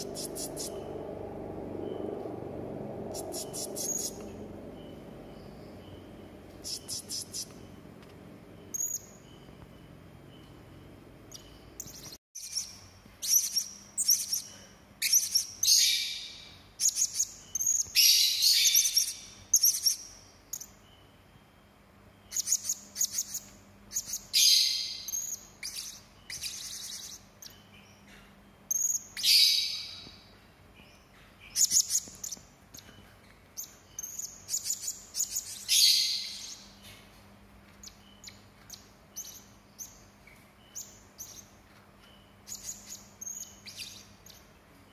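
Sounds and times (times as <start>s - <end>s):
parrot chirping harshly: 0.0s - 0.8s.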